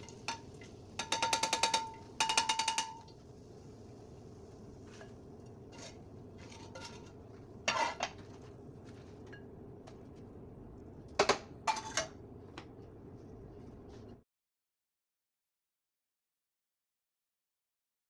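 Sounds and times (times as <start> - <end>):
utensils clinking on dishes: 1.0 - 3.1
steady low hum: 3.1 - 14.2.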